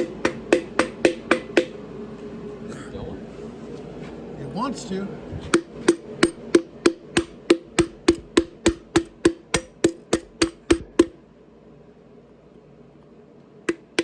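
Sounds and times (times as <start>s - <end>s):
hammer blows on wooden block: 0.0s - 1.8s, 5.5s - 11.2s.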